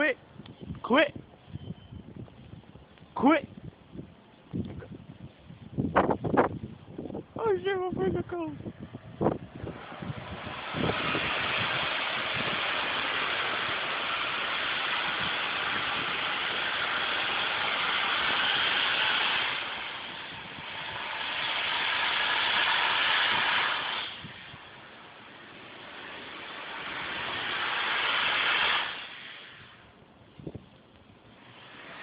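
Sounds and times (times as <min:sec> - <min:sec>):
engine revving in snow: 0:09.2 - 0:29.8, 0:31.3 - 0:32.0.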